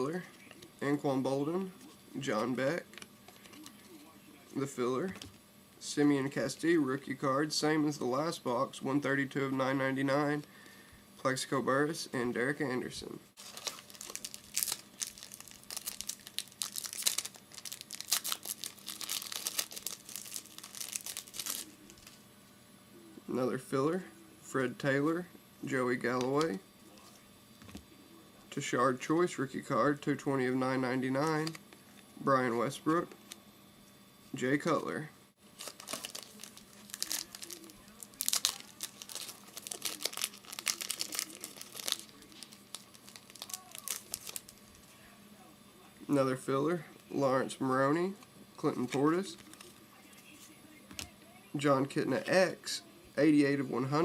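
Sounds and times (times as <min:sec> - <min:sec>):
wrapper tearing and crinkling: 0:13.4 - 0:22.1, 0:35.6 - 0:44.7.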